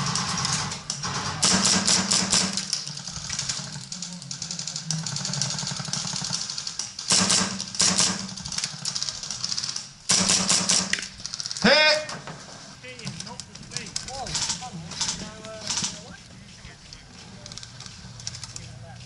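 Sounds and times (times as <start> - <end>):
airsoft guns firing full auto: 0.0 - 11.8.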